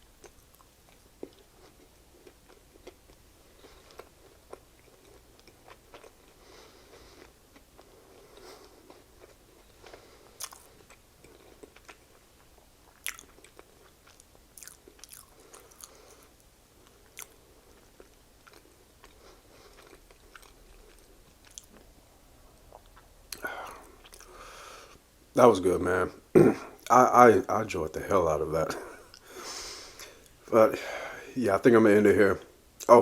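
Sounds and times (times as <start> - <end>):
person chewing food: 0.2 - 25.0.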